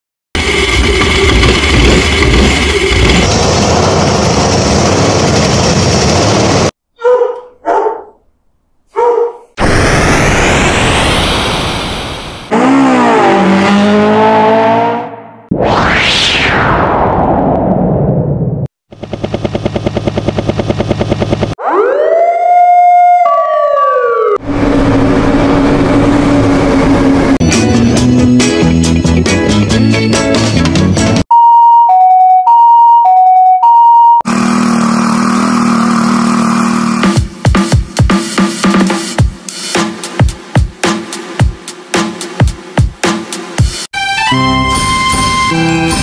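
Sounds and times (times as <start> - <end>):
steady engine drone: 0.4 - 6.6, 18.9 - 21.6, 24.4 - 27.4, 34.3 - 37.2
helicopter rotor chopping: 0.4 - 6.7, 18.9 - 21.6
steady loud noise: 0.4 - 6.7, 9.6 - 12.8, 15.5 - 21.6, 24.4 - 27.4
dog barking: 7.0 - 8.2, 8.9 - 9.6
siren wail: 15.5 - 18.4, 21.6 - 27.4.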